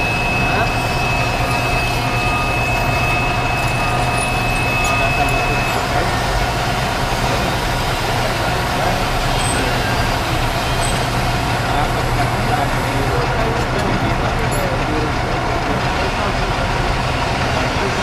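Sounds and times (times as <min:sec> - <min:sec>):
high thin tone: 0:00.0 - 0:06.4
metal lathe humming: 0:00.0 - 0:13.0.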